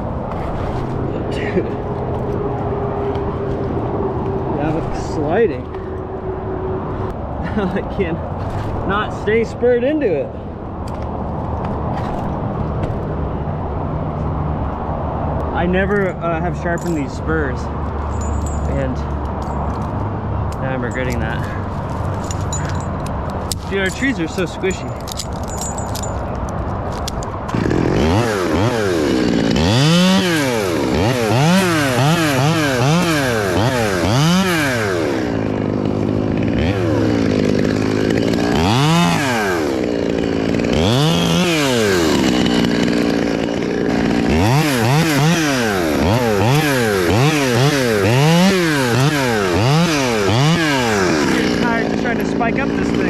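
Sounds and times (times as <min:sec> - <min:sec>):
chainsaw revving: 0:27.5 - 0:53.0.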